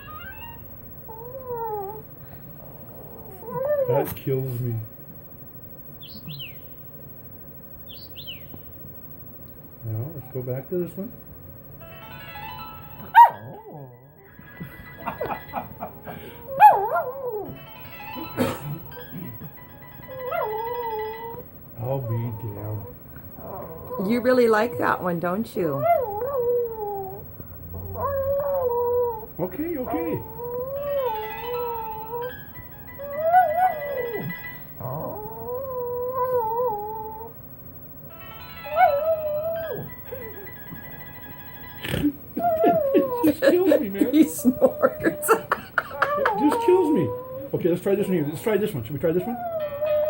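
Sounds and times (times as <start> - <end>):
faint phone ringtone melody: 0.0 - 3.6, 9.0 - 16.5, 17.1 - 23.4, 24.0 - 44.4
dog whining and howling: 0.0 - 4.5, 13.0 - 37.8, 38.4 - 41.0, 41.6 - 50.0
phone ringtone melody: 11.8 - 13.2, 13.9 - 16.4, 17.5 - 21.2, 30.0 - 35.7, 38.1 - 42.3.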